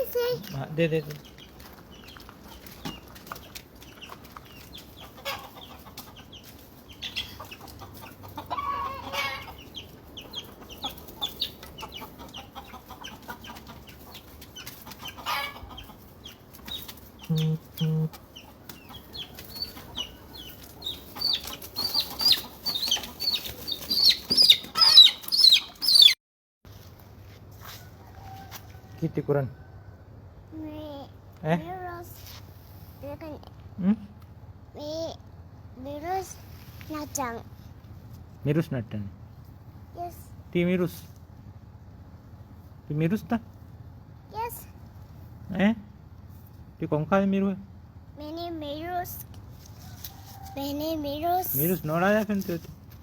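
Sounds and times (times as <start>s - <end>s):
chickens clucking: 0.0s - 26.2s.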